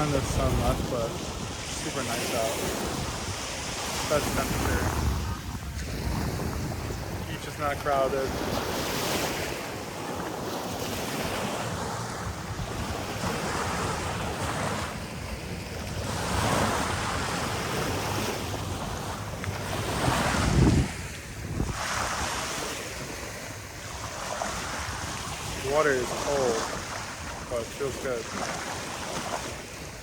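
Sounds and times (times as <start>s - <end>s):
waves washing on sand beach: 0.0s - 30.0s
wind buffeting microphone: 2.6s - 25.6s.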